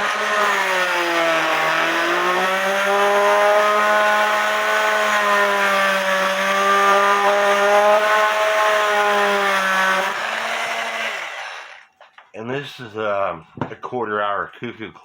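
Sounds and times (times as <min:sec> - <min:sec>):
multi-tool motor whine: 0:00.0 - 0:11.9.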